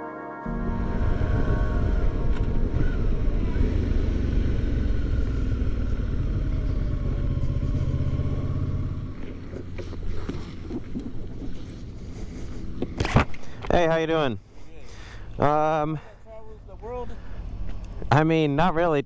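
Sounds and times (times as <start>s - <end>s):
motorcycle engine rumbling: 0.5s - 13.6s.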